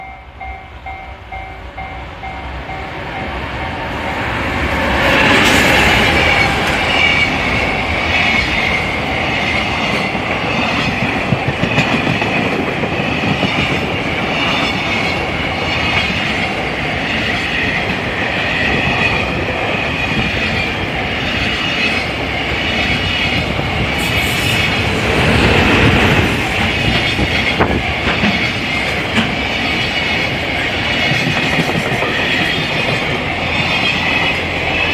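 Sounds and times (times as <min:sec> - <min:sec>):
crossing bell ringing: 0:00.0 - 0:04.6, 0:05.8 - 0:10.5, 0:25.9 - 0:34.9
locomotive passing: 0:00.0 - 0:34.9
train wheels clattering over rail joints: 0:10.0 - 0:15.0, 0:25.5 - 0:33.8.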